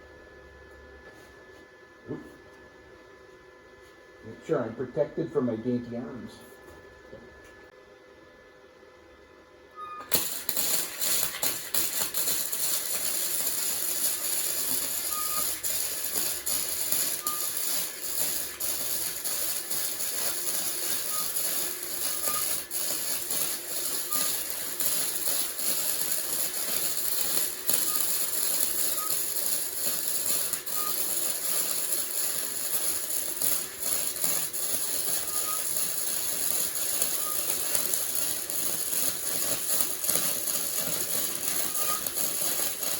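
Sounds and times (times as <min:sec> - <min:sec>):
welding arc crackling: 0:10.0 - 0:42.9.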